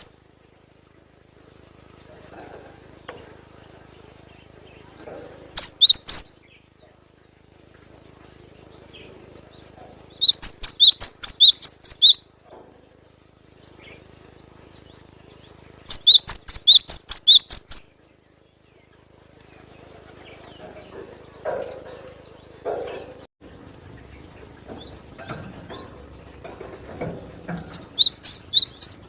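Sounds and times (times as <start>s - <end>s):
bird singing high repeated notes: 5.6s - 6.3s, 10.1s - 12.2s, 13.8s - 17.9s, 27.7s - 29.0s.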